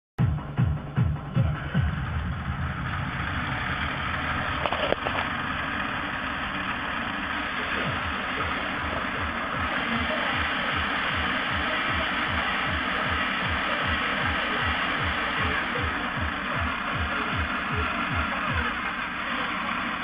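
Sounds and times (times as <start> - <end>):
electronic music with kick drum: 0.2 - 20.0.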